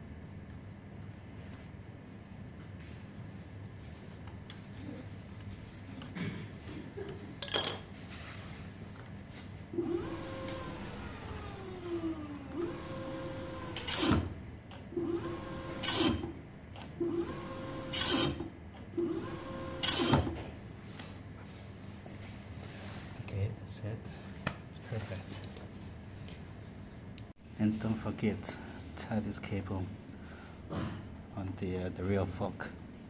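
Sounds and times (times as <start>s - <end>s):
electric motor whining: 9.8s - 14.3s, 15.0s - 16.3s, 17.0s - 18.4s, 19.0s - 20.3s.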